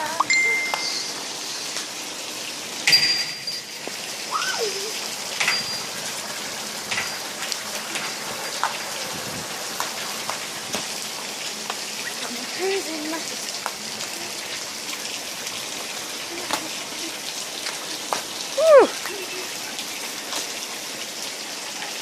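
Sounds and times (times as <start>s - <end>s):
steady rain falling: 0.0s - 22.0s
drips knocking on a surface: 5.4s - 6.0s, 6.9s - 7.3s.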